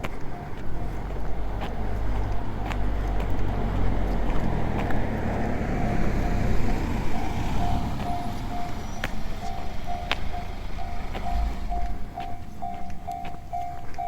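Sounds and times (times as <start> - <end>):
level-crossing alarm bell ringing: 0.0 - 2.6, 5.6 - 14.0
train rumbling past: 0.0 - 14.0
train wheels clacking: 7.1 - 14.0.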